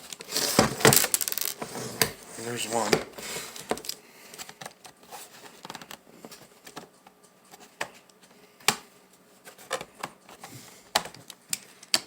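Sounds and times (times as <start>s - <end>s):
laptop being taken apart: 0.0s - 6.9s.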